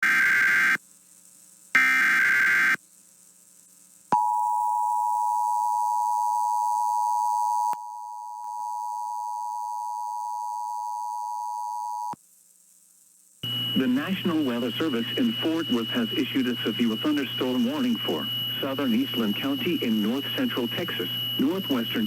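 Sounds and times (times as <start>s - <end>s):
steady two-tone attention signal: 13.4s - 22.0s
warbling digital data tones: 13.4s - 22.0s.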